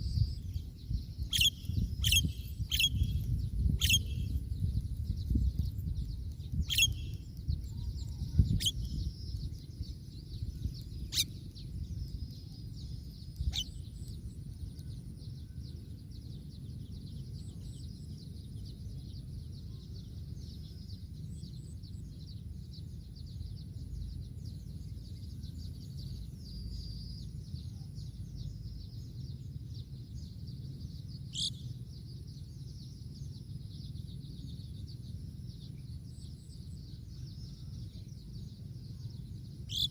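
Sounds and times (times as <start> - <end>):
sharp bird calls: 0.0 - 4.4, 6.5 - 9.4, 31.3 - 31.8, 39.7 - 39.9
birds chirping: 0.0 - 39.9
low wind rumble: 0.0 - 39.9.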